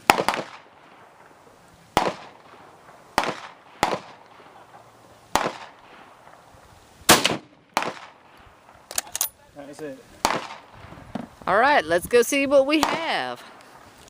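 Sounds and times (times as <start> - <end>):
gunshots with echo: 0.0 - 1.2, 2.0 - 6.3, 7.1 - 8.3.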